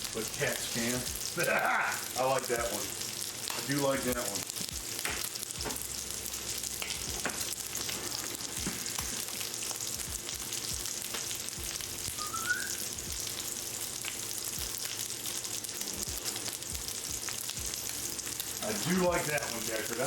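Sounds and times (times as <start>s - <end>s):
food sizzling in a pan: 0.0s - 20.0s
brief rising chirp: 12.2s - 12.8s.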